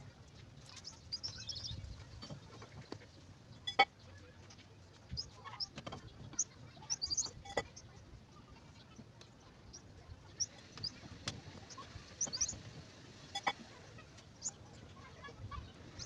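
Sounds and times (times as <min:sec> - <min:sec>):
high bird chirps: 0:00.7 - 0:02.2, 0:05.1 - 0:07.9, 0:11.6 - 0:12.6.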